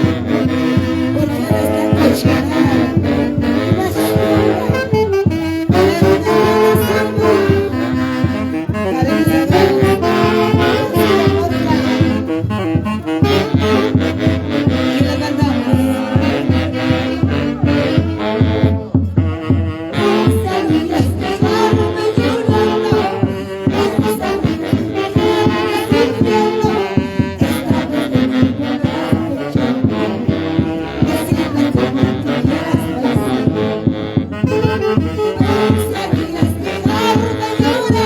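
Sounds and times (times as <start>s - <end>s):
orchestra playing: 0.0s - 27.6s
saxophones playing melody: 0.0s - 38.0s
steady percussive beat: 0.0s - 38.0s.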